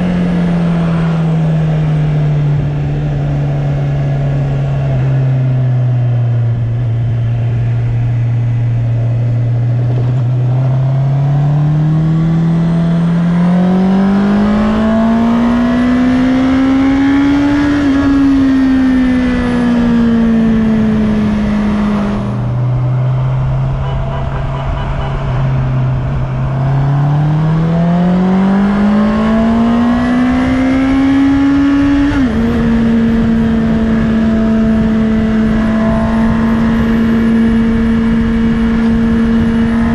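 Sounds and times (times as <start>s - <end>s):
motorcycle engine revving: 0.0s - 39.9s
wind rushing over microphone: 12.0s - 39.9s.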